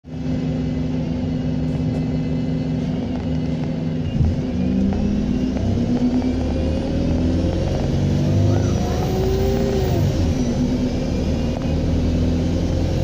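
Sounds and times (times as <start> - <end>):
bus diesel engine running: 0.0 - 13.0
high turbocharger whistle: 4.0 - 12.9.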